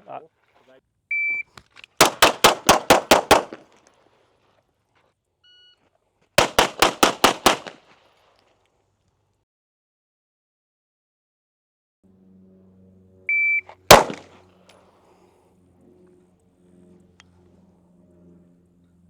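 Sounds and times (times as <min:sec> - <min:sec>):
rapid pistol shots: 0:02.0 - 0:03.7, 0:06.4 - 0:07.9, 0:13.9 - 0:14.4.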